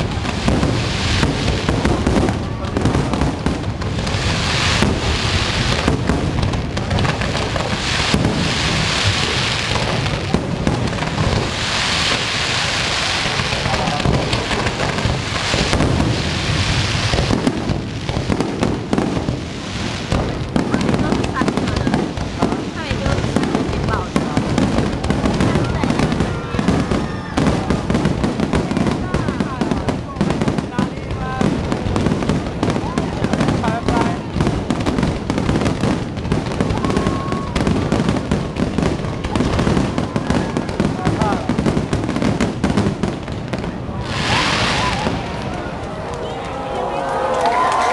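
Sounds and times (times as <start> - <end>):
fireworks banging and crackling: 0.0 - 47.9.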